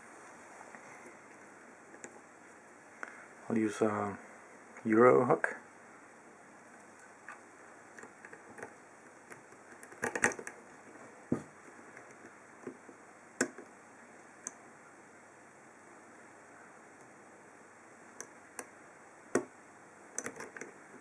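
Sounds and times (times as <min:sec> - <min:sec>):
lock pick clicking in padlock: 0:20.2 - 0:20.7.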